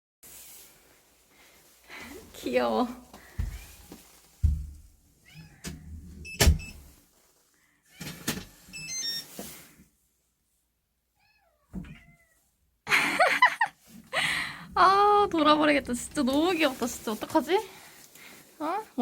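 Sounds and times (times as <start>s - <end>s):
cat meowing: 5.2s - 5.9s, 11.2s - 12.4s.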